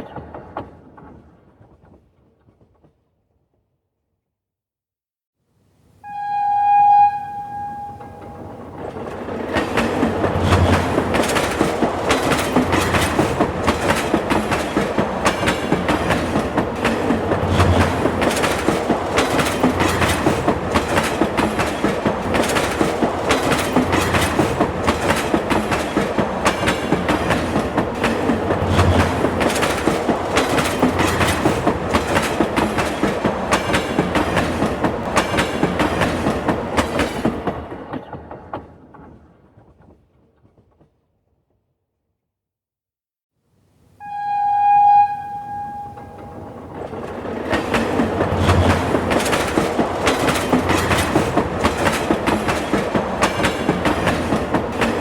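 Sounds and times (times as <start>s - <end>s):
brief pitched tone: 6.0s - 8.7s, 44.0s - 46.6s
train wheels clacking on rails: 7.6s - 40.9s, 45.5s - 55.0s.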